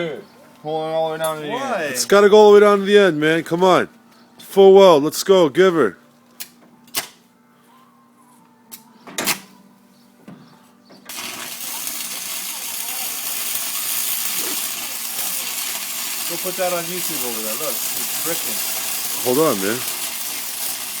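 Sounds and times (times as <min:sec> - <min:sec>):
arc welder hissing: 0:11.1 - 0:21.0.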